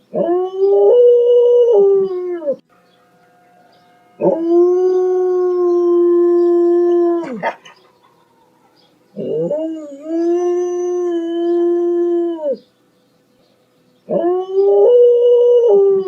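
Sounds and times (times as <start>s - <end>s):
dog howling: 3.2s - 12.6s, 14.1s - 16.0s.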